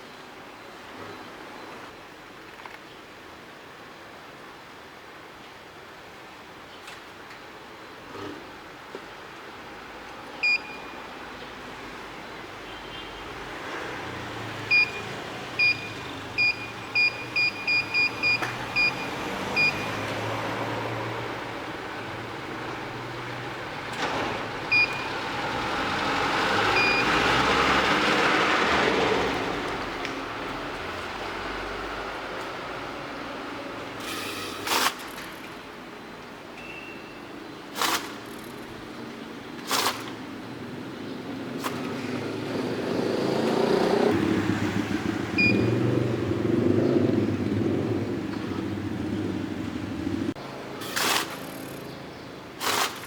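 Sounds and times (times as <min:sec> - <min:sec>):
short high beeps: 0:15.6 - 0:20.0.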